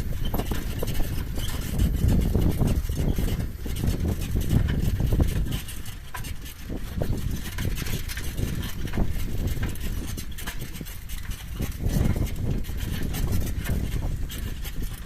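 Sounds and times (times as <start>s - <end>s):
wheel squeaking: 0.0s - 15.0s.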